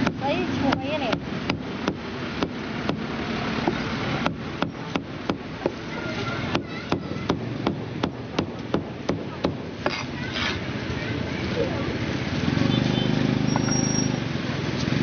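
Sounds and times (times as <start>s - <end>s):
cleaver chopping meat: 0.0s - 5.8s, 6.5s - 10.1s
murmur of busy market: 0.0s - 15.0s.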